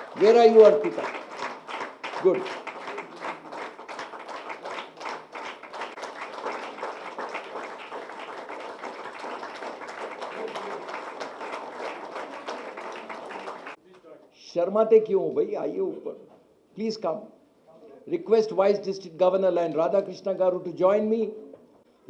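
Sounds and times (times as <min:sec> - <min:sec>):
audience applauding: 0:00.0 - 0:13.8.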